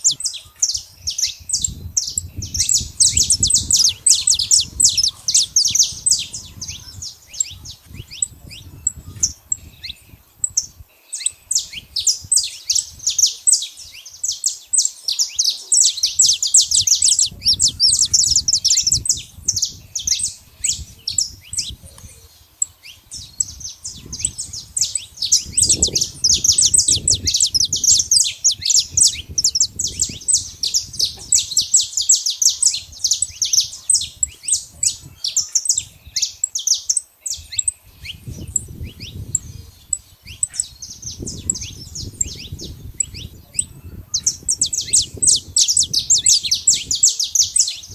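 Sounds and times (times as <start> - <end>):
finch chirps and trills: 0.0 - 47.9.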